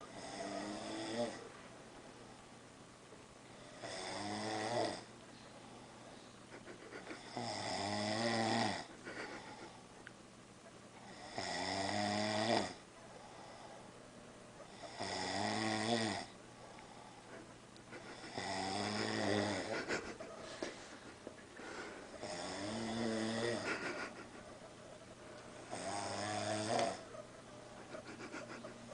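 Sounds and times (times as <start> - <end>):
man snoring: 0.0 - 1.5, 3.6 - 5.1, 7.2 - 9.6, 11.0 - 13.7, 14.7 - 17.0, 18.1 - 19.8, 21.6 - 23.9, 25.7 - 27.0.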